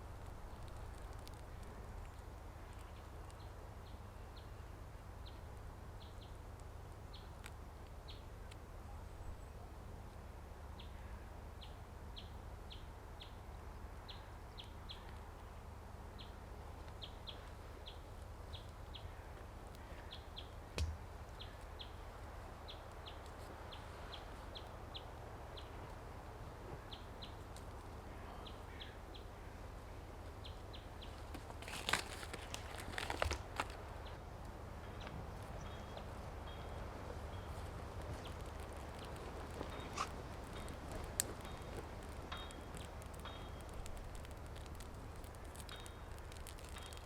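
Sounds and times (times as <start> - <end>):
small bird chirping: 35.5 - 47.0.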